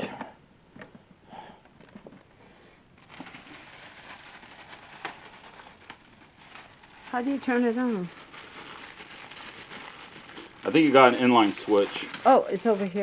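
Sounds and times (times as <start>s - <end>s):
plastic packaging crinkling: 3.0s - 13.0s.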